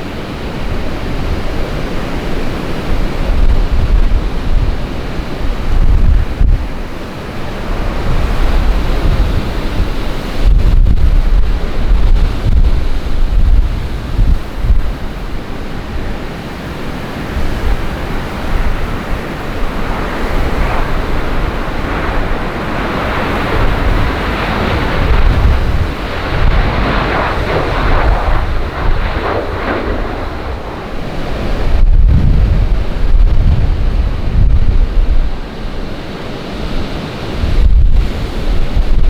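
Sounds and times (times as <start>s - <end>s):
gusty wind buffeting microphone: 0.0s - 39.0s
low rumble: 23.8s - 35.6s.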